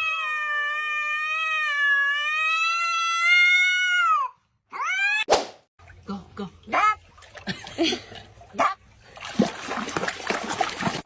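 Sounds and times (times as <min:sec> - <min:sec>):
cat yowling: 0:00.0 - 0:05.3.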